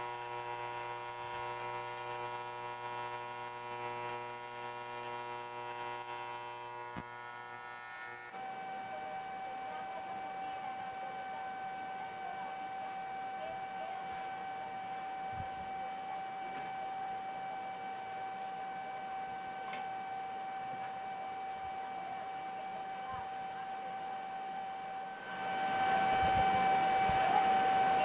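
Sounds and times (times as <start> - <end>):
electric motor whining: 0.0 - 8.4.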